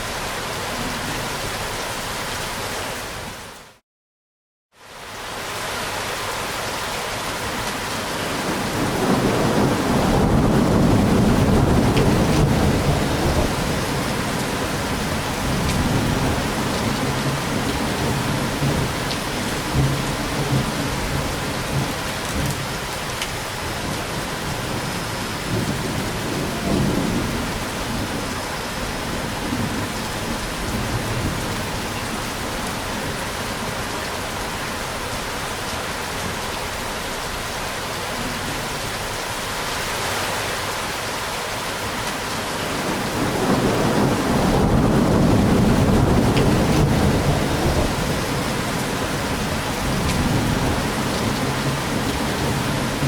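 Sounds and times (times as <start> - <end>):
steady rain falling: 4.8 - 53.0
thunder rumbling: 8.3 - 22.8, 23.7 - 33.6, 42.6 - 53.0.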